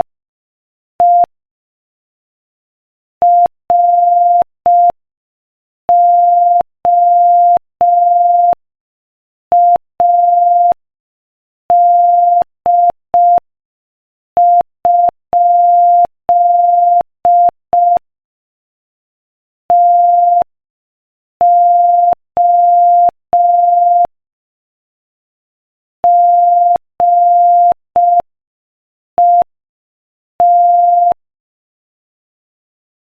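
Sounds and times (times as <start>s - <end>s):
morse code beeps: 21.4s - 24.1s, 26.1s - 28.2s, 29.2s - 29.5s, 30.4s - 31.2s.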